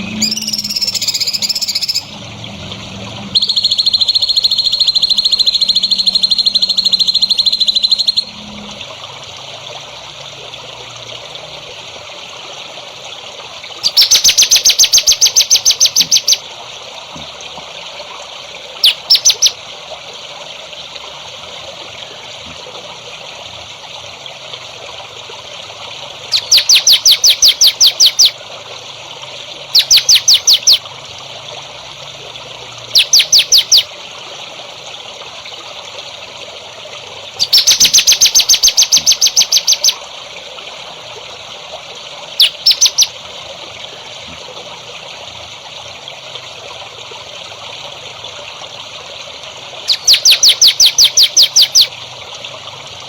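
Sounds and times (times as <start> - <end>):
trickling water: 0.0 - 53.0
songbird trilling and chirping: 0.1 - 2.1, 3.4 - 8.3, 13.8 - 16.4, 18.8 - 19.6, 26.3 - 28.3, 29.8 - 30.8, 33.0 - 33.9, 37.4 - 40.0, 42.4 - 43.1, 49.9 - 51.9.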